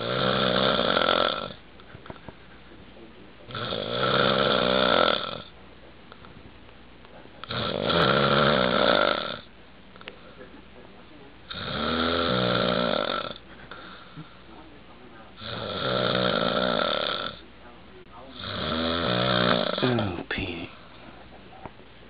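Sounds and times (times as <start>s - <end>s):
man snoring loudly: 0.0s - 1.6s, 3.5s - 5.5s, 7.4s - 9.5s, 11.5s - 13.4s, 15.4s - 17.4s, 18.3s - 20.1s.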